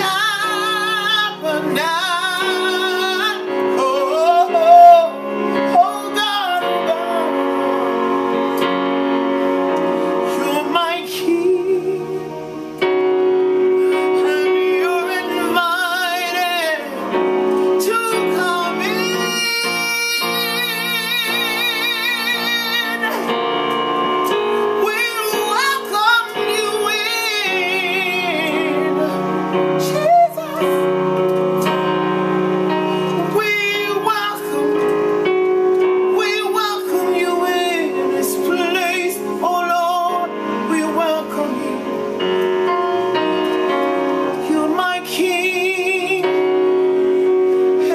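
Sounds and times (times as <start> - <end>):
woman singing gospel: 0.0 - 7.9, 10.3 - 12.4, 14.0 - 17.1, 17.8 - 23.7, 24.5 - 30.9, 33.2 - 34.9, 36.1 - 41.9, 44.4 - 46.3
sustained keyboard accompaniment: 0.0 - 47.9.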